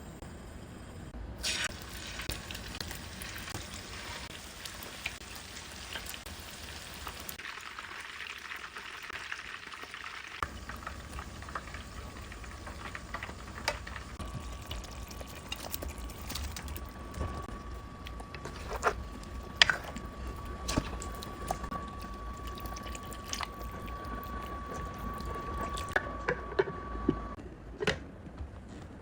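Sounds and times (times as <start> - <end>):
food frying in hot oil: 1.4 - 17.5.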